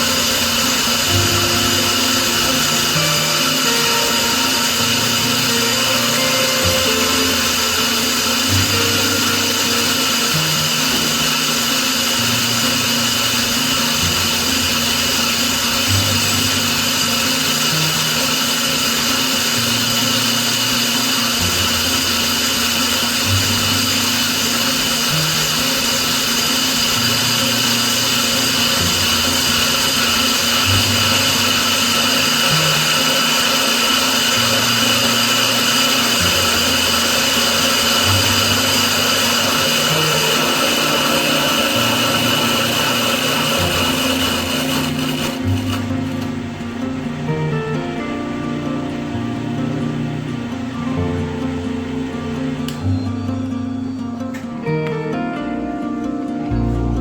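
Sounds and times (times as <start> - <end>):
power tool motor whining: 0.0 - 54.7
background music with bass line: 56.5 - 57.0.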